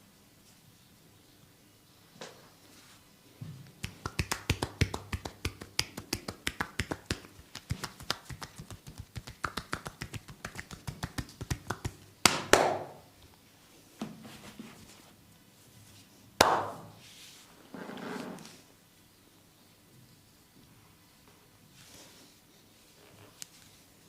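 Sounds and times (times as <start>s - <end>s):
hand slaps on body: 3.8s - 13.0s, 16.4s - 17.0s.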